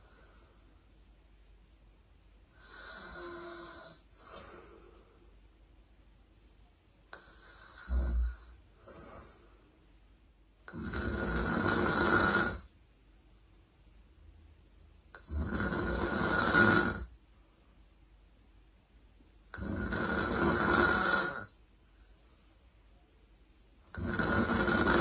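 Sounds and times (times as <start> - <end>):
woman snoring: 2.5 - 4.9, 7.1 - 9.4, 10.7 - 12.7, 15.1 - 17.1, 19.5 - 21.6, 23.9 - 25.0.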